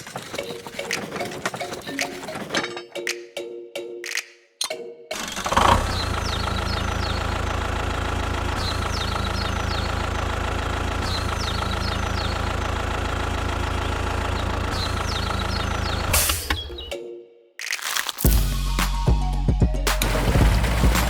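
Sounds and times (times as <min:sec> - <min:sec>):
small engine idling: 0:05.2 - 0:16.1, 0:20.0 - 0:21.0.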